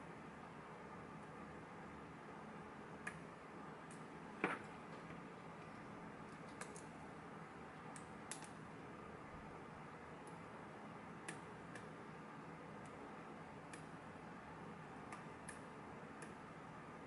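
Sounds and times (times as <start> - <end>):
room hiss: 0.0 - 17.0.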